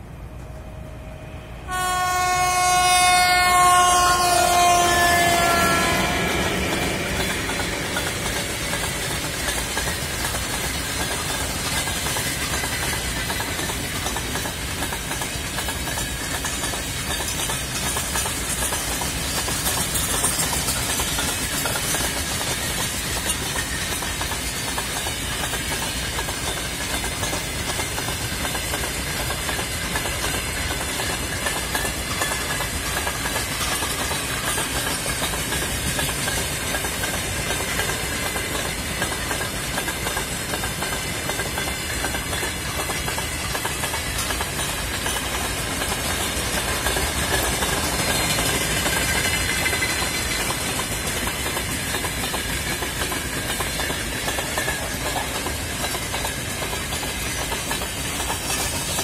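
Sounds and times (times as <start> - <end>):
train wheels rushing on rails: 0.0 - 59.0
wheels clicking over rail joints: 1.7 - 59.0.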